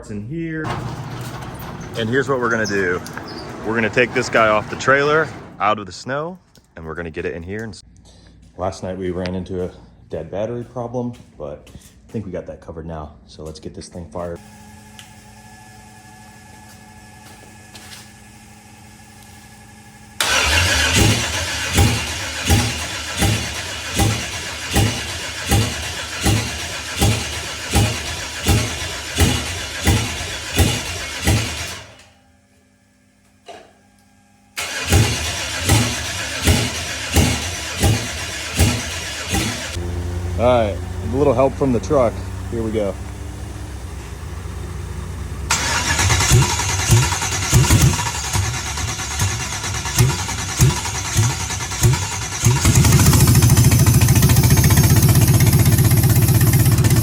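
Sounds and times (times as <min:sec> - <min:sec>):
engine cranking by starter: 0:00.6 - 0:05.8, 0:20.2 - 0:32.1, 0:34.6 - 0:57.0.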